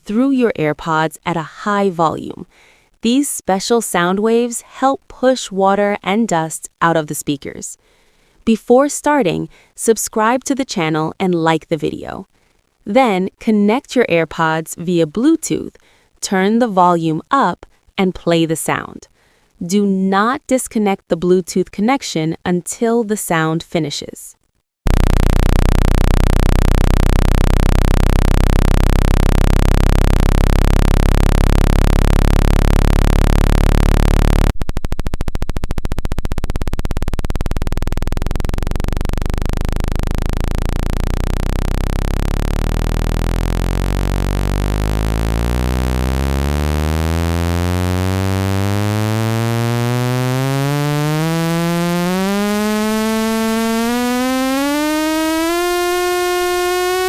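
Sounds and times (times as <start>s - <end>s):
buzzy rising sweep tone: 24.9s - 34.6s, 35.3s - 57.0s
low synthesized buzz: 24.9s - 57.0s.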